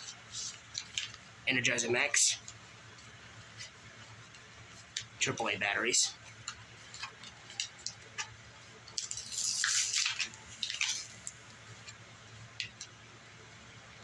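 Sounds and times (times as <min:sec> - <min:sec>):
crinkling rustle of plastic: 0:08.9 - 0:11.5.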